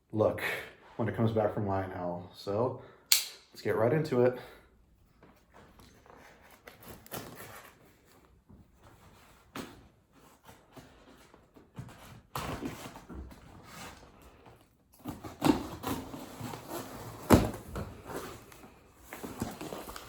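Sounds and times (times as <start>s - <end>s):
packing rustling and scraping: 5.4s - 20.0s.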